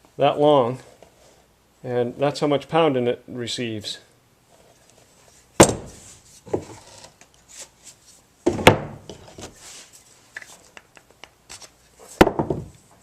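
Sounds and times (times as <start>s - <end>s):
sharp wooden knocks: 5.6s - 6.0s, 8.5s - 9.0s, 12.2s - 12.8s.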